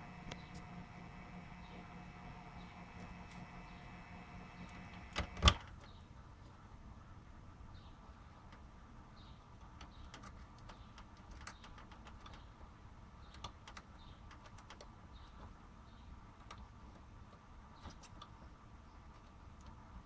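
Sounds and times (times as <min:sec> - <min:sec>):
water cooler buzzing faintly: 0:00.0 - 0:05.6
faint irregular clicks: 0:08.4 - 0:08.7, 0:09.5 - 0:15.7, 0:16.3 - 0:20.0.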